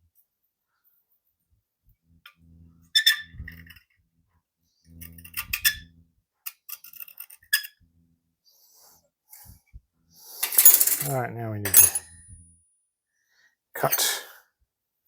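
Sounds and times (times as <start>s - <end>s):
steel pieces clinking on metal: 10.4s - 12.2s.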